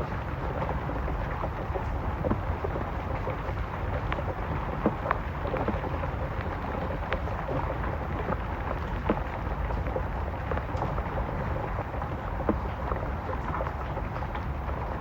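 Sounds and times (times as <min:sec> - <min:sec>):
raindrops tapping a surface: 0:00.0 - 0:15.0
steady rain hiss: 0:00.0 - 0:15.0.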